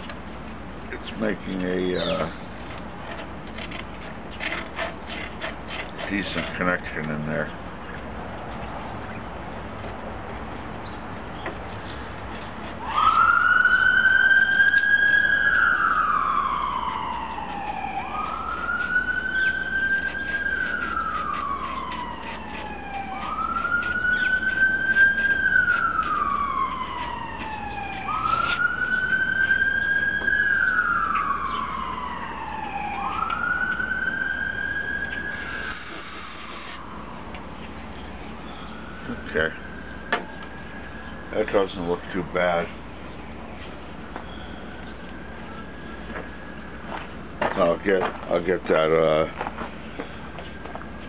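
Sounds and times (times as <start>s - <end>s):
siren wailing: 1.2s - 2.5s, 12.7s - 42.8s, 44.0s - 47.7s.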